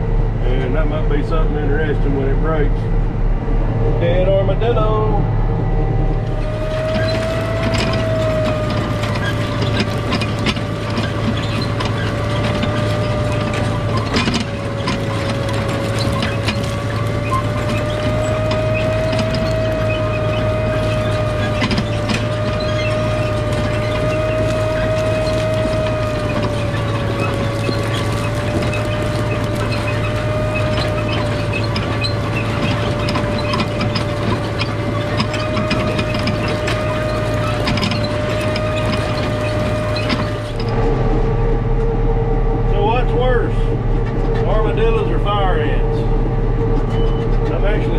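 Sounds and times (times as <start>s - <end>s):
steady machinery whine: 0.0s - 47.9s
tractor diesel engine running: 0.0s - 47.9s
machinery clicks and rattles: 6.2s - 42.0s.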